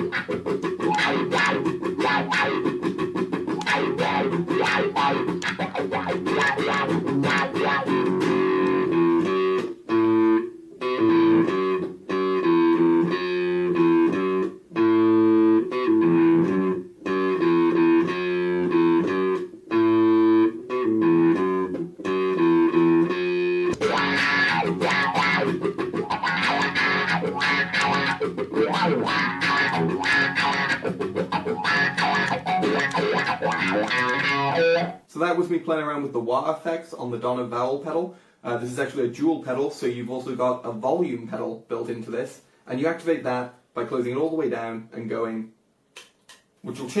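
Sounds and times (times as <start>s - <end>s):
electric guitar with wah pedal: 0.0s - 35.0s.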